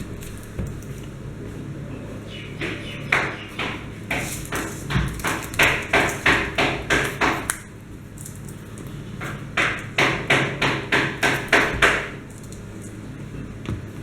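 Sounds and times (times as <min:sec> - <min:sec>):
hands scratching cardboard packaging: 0:04.1 - 0:07.6.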